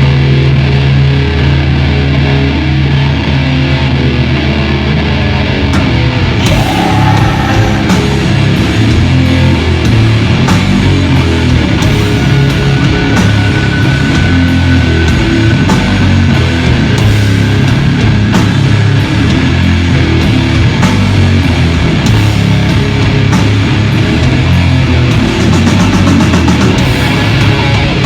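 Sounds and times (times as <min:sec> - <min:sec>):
bass guitar: 0:00.0 - 0:28.0
heavy distorted guitars: 0:00.0 - 0:28.0
drums and cymbal hits: 0:05.8 - 0:28.0.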